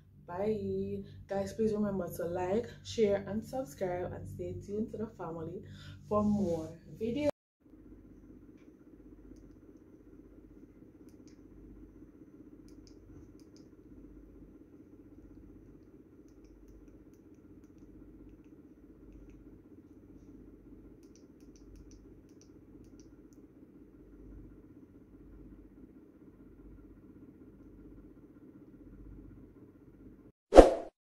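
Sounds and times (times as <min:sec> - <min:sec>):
faint room hum: 0:00.0 - 0:30.3
light clicks: 0:21.0 - 0:23.4.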